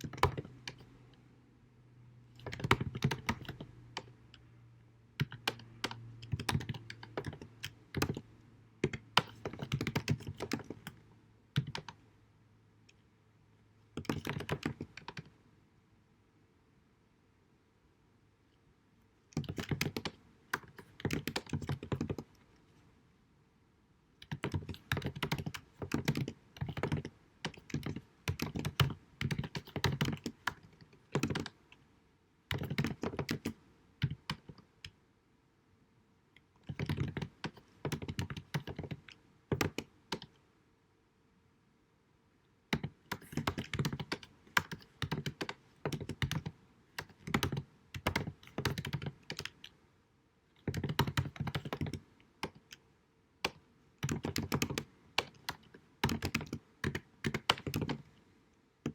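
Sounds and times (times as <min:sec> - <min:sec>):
keyboard typing clicks: 0:00.0 - 0:01.2, 0:02.4 - 0:04.4, 0:05.2 - 0:11.0, 0:11.6 - 0:12.0, 0:14.0 - 0:15.3, 0:19.3 - 0:22.4, 0:24.2 - 0:31.6, 0:32.5 - 0:35.0, 0:36.6 - 0:40.4, 0:42.7 - 0:49.8, 0:50.6 - 0:52.8, 0:53.4 - 0:58.1
faint steady hum: 0:00.0 - 0:58.9.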